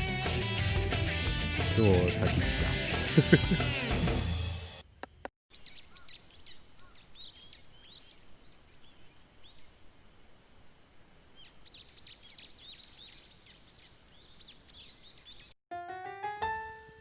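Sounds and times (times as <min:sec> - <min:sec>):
small songbirds chirping: 0:05.5 - 0:10.0, 0:11.1 - 0:15.6
faint outdoor hiss: 0:05.5 - 0:15.4.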